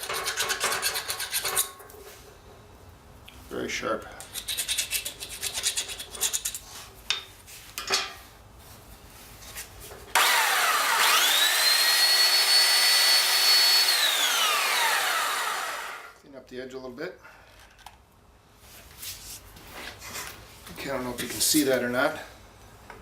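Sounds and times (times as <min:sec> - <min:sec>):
file rasping on metal pipe: 0:00.0 - 0:01.7, 0:04.2 - 0:06.6
power sander whining: 0:10.2 - 0:16.2.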